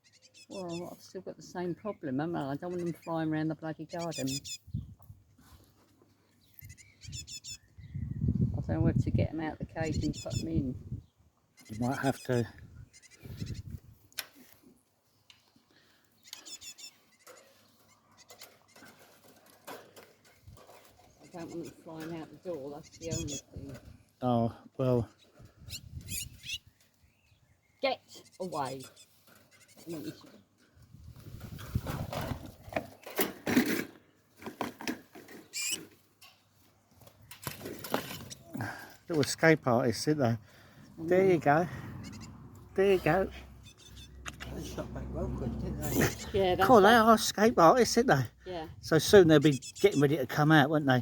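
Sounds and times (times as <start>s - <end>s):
bird chicks calling: 0.0s - 5.0s, 5.8s - 8.5s, 9.7s - 14.1s, 15.7s - 19.2s, 20.1s - 23.8s, 25.1s - 30.5s, 35.3s - 39.0s, 40.4s - 44.8s, 45.8s - 47.2s, 49.1s - 50.3s
rustling and scrabbling: 17.0s - 24.2s, 28.9s - 39.3s.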